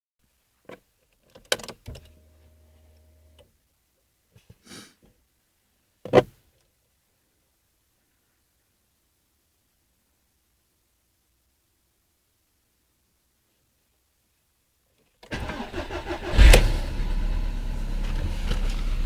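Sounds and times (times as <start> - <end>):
brief hiss: 4.5 - 5.0.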